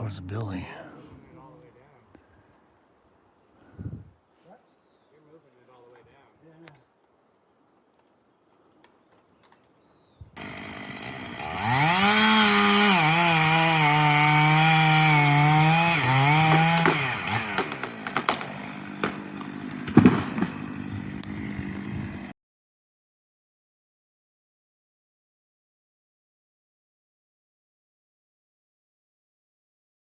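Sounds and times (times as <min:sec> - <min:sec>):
chainsaw revving and cutting: 0:10.4 - 0:22.3.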